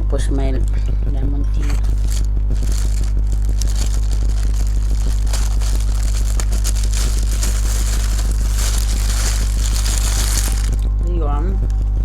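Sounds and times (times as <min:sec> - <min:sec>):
low electrical hum: 0:00.0 - 0:12.0
crunchy chewing: 0:01.6 - 0:10.9
small crinkles: 0:01.6 - 0:10.9.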